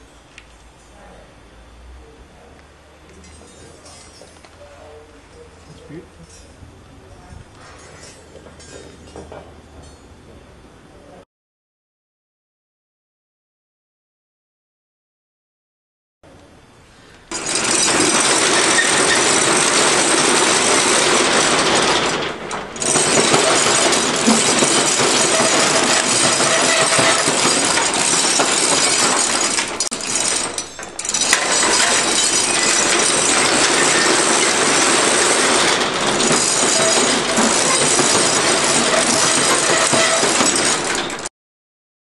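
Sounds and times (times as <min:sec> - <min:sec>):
hard objects clattering: 0:17.3 - 0:41.3.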